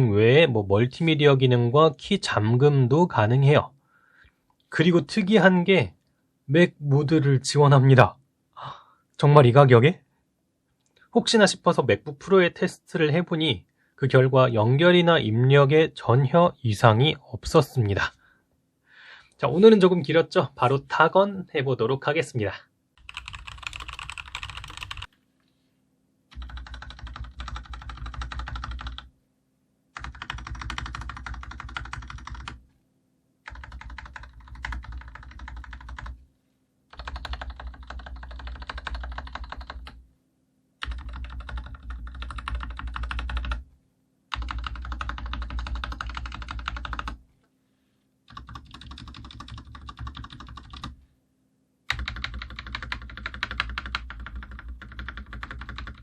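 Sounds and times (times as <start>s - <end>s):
mechanical keyboard typing: 23.0s - 25.1s, 26.3s - 29.1s, 30.0s - 32.6s, 33.5s - 36.2s, 36.9s - 40.0s, 40.8s - 43.6s, 44.3s - 47.2s, 48.3s - 51.0s, 51.9s - 56.0s.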